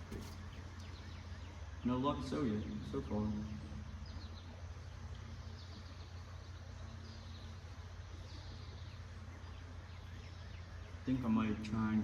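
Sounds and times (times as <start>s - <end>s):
low outdoor rumble: 0.0s - 12.0s
small birds chirping: 0.0s - 12.0s.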